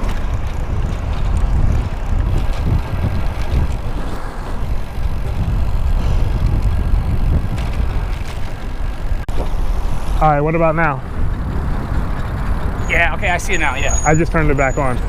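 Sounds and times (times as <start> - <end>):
road traffic: 0.0 - 15.0
wind buffeting microphone: 0.0 - 15.0.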